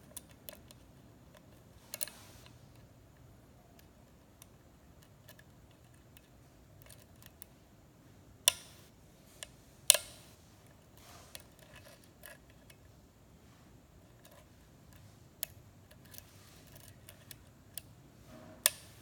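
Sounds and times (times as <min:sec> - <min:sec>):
lock pick ticking and scraping: 0:00.0 - 0:07.5, 0:08.4 - 0:12.9, 0:14.1 - 0:18.0, 0:18.6 - 0:19.0
lock pin clicks: 0:08.5 - 0:08.9, 0:09.9 - 0:10.3, 0:18.6 - 0:19.0.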